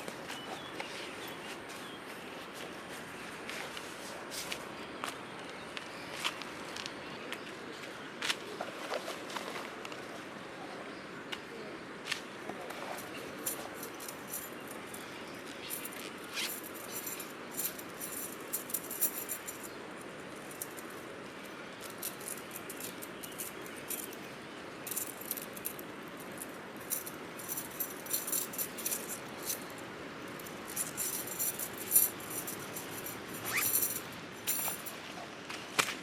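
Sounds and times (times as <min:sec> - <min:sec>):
steady background hiss: 0:00.0 - 0:36.0
light metallic jingling: 0:12.7 - 0:35.2.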